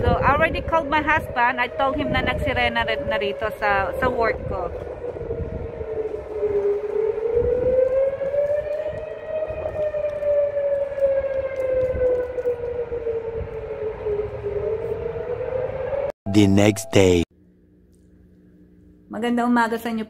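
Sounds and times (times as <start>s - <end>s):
tornado siren wailing: 0.0s - 17.1s.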